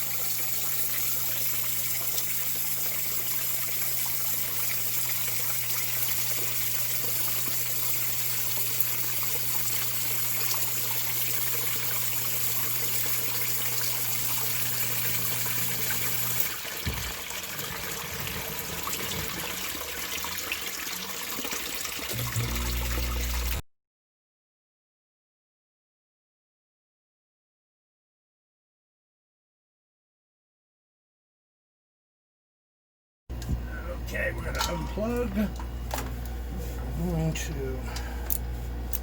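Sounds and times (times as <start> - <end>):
sump pump motor humming: 0.0 - 23.6, 33.3 - 39.0
water trickling and splashing: 0.0 - 23.6.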